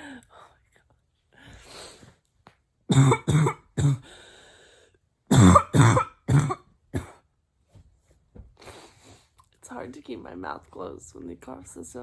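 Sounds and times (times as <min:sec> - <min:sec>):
woman's barking cough: 0:02.9 - 0:04.0, 0:05.3 - 0:07.2.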